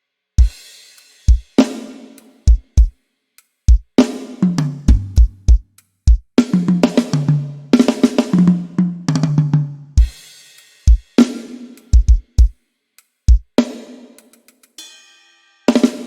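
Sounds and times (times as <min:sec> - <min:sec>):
drum kit playing: 0:00.4 - 0:02.9, 0:03.7 - 0:12.6, 0:13.3 - 0:14.9, 0:15.7 - 0:16.0
tom fill: 0:03.7 - 0:11.2.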